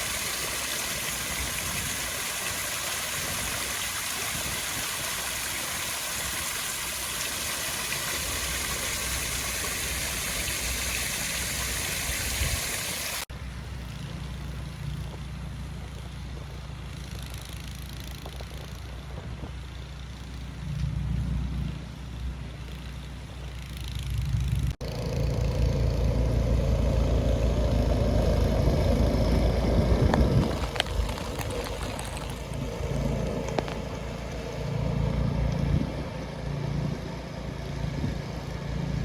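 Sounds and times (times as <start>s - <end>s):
vehicle engine rumbling: 13.2s - 39.0s.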